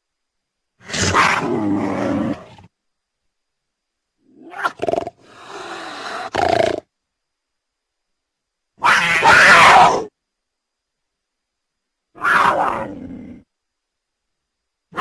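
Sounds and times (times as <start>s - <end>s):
cougar calling: 0.8s - 2.7s, 4.4s - 6.8s, 8.8s - 10.1s, 12.2s - 13.4s.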